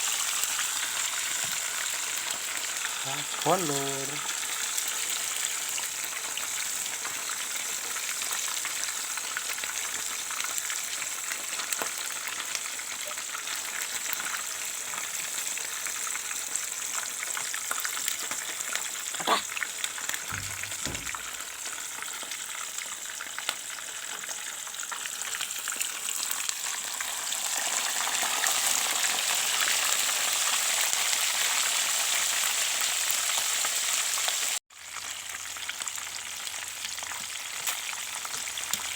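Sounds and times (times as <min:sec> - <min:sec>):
hot oil sizzling: 0:00.0 - 0:38.9.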